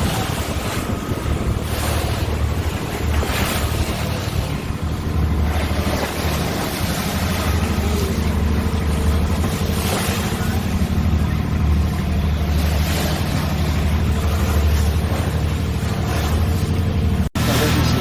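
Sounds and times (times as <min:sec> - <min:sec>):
wind on microphone: 0:00.0 - 0:12.0
boat engine rumbling: 0:00.0 - 0:18.0
water wash: 0:00.0 - 0:18.0.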